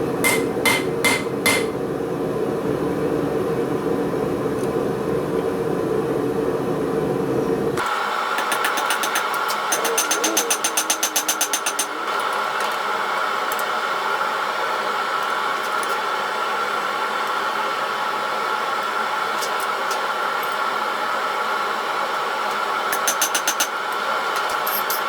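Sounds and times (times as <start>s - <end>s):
steady mechanical running: 7.5s - 25.0s.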